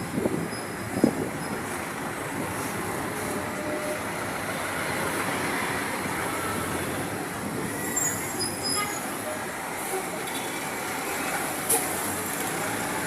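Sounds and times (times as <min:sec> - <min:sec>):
tyres on wet road: 0:00.0 - 0:13.0.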